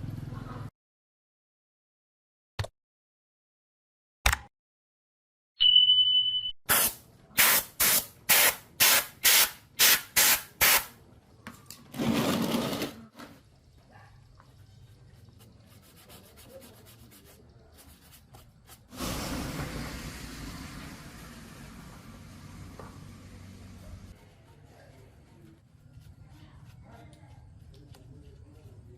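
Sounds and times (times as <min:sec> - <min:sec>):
hissing spray bursts: 0:06.7 - 0:11.0, 0:18.9 - 0:24.1.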